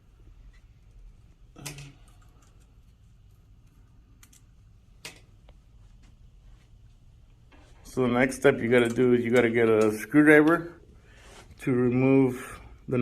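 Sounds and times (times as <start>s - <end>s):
light clicks and taps of parts: 1.6s - 6.7s, 8.7s - 10.7s.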